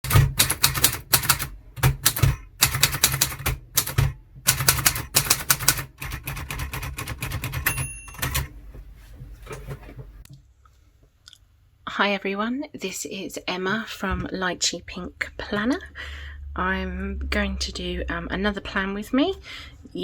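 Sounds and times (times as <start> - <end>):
typewriter key strikes: 0.0 - 8.5
typewriter carriage bell: 7.3 - 8.5.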